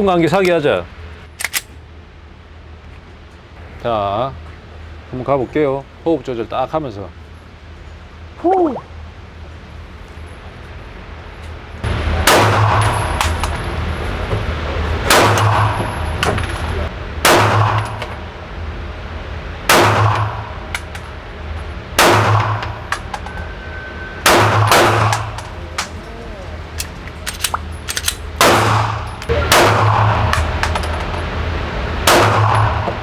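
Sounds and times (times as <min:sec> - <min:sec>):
pistol shots with reverberation: 0:12.2 - 0:13.9, 0:15.0 - 0:16.6, 0:17.2 - 0:18.2, 0:19.7 - 0:21.1, 0:22.0 - 0:23.4, 0:24.2 - 0:26.0, 0:26.8 - 0:31.2, 0:32.0 - 0:33.0.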